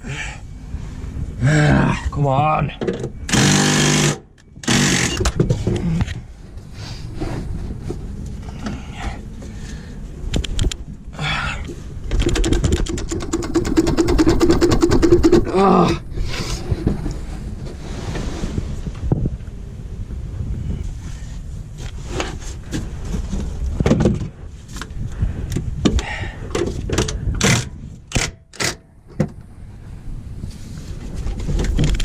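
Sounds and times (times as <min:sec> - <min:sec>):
fast mechanical rattling: 0:12.1 - 0:15.5
person grunting: 0:15.4 - 0:16.1.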